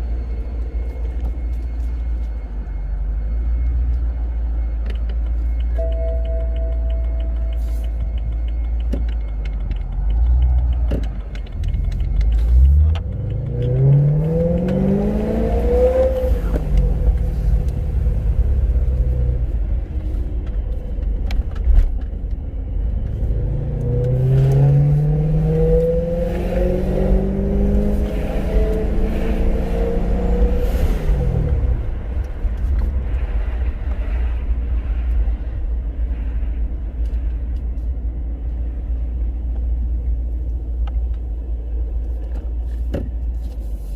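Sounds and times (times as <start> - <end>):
car engine revving: 7.1 - 20.2, 22.8 - 35.7.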